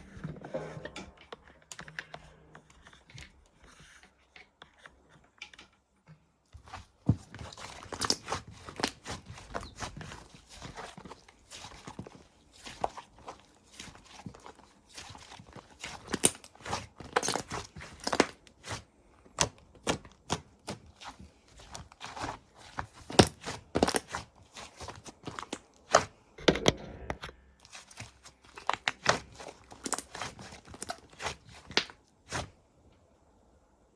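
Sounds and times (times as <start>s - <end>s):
slime crackling and squelching: 7.2s - 26.2s, 27.6s - 32.5s.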